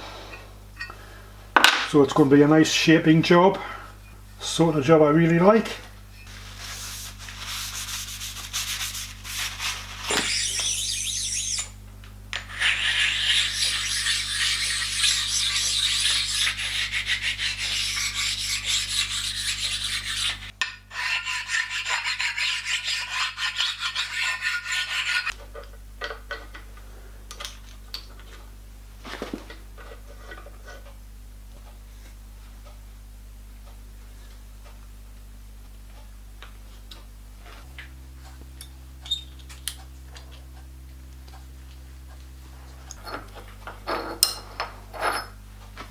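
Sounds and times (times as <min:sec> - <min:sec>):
tool scraping through iron: 0:12.4 - 0:25.3.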